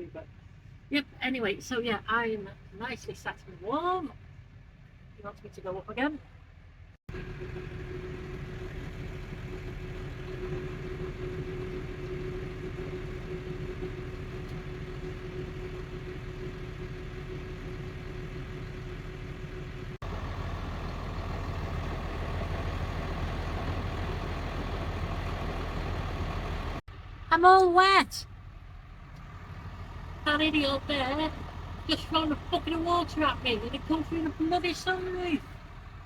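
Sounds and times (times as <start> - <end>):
loader engine rumble: 0.0 - 36.0
steady engine whine: 7.1 - 27.3, 28.3 - 36.0.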